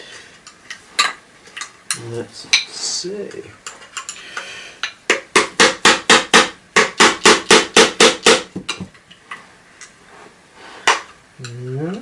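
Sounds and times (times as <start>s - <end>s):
hammer tapping on motor housing: 5.1s - 8.9s.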